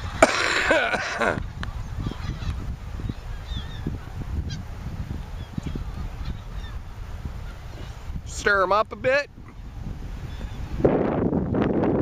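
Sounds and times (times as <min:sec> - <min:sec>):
geese honking: 0:01.8 - 0:07.9.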